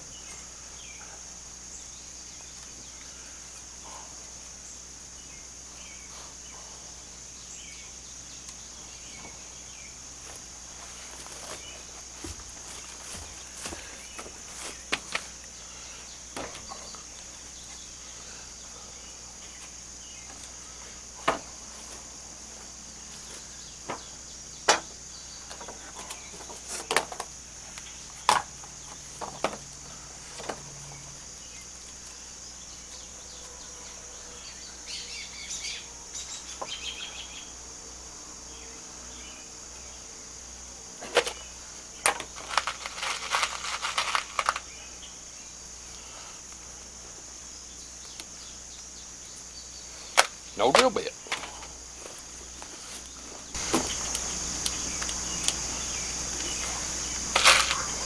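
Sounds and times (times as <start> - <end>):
high-pitched insect drone: 11.4 - 58.0
chirps: 30.8 - 37.6, 53.5 - 58.0.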